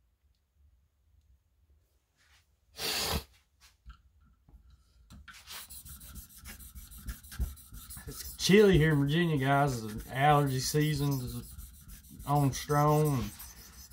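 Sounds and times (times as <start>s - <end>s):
loud sniffle: 2.8s - 3.4s.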